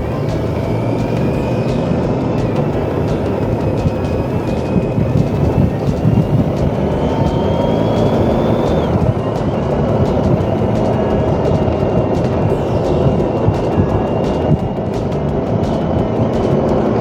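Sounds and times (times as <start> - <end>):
motorcycle engine revving: 0.0 - 17.0
wind rush on microphone: 0.0 - 17.0.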